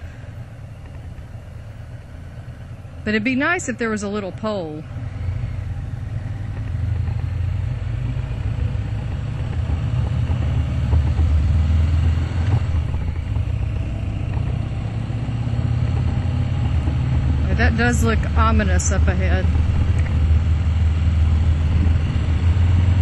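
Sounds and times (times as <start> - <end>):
motorcycle engine exhaust note: 0.0 - 23.0.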